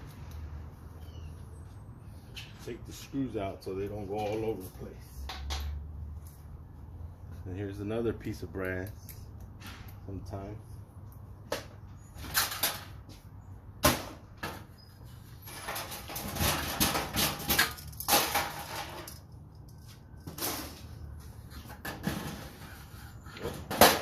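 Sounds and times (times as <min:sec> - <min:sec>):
metal parts clanking and rattling: 0:15.4 - 0:20.9.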